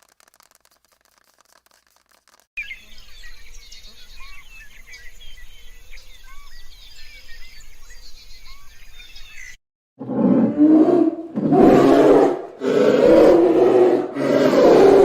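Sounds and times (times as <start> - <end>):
birds chirping: 2.6 - 15.0
rough animal calls: 10.0 - 15.0.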